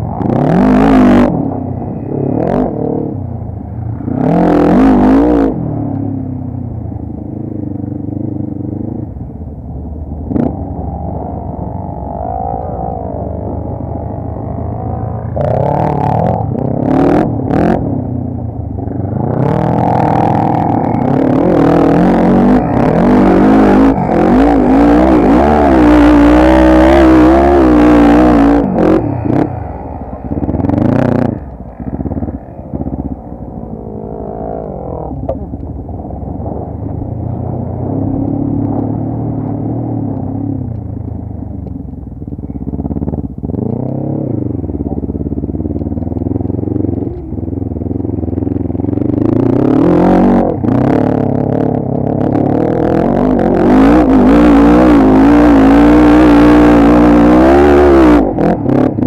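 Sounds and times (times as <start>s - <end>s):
quad bike engine revving: 0.0s - 9.3s, 10.1s - 59.0s.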